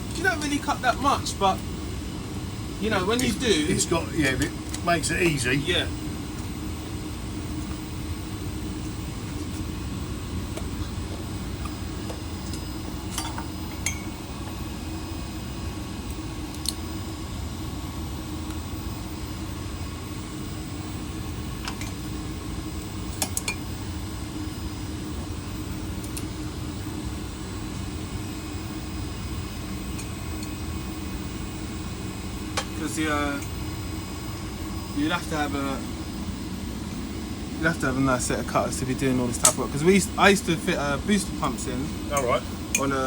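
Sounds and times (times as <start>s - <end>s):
steady low hum: 0.0s - 43.0s.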